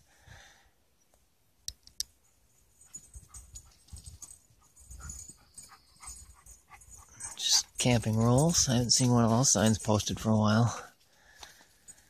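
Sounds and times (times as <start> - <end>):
sharp clicks: 1.1 - 2.2
dog panting: 2.8 - 9.4.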